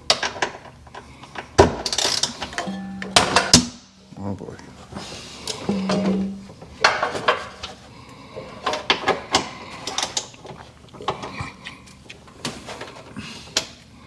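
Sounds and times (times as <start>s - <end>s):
metal tools clicking and clanking: 1.8s - 3.6s, 5.5s - 7.6s.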